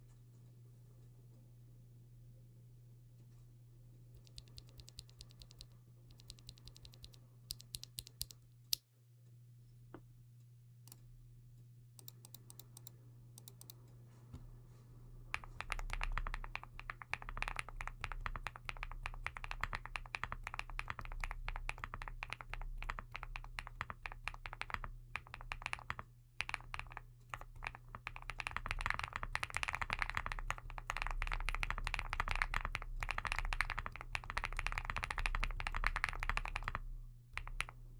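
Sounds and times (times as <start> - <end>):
mechanical keyboard typing: 4.2 - 8.4, 12.0 - 13.7, 15.4 - 37.8.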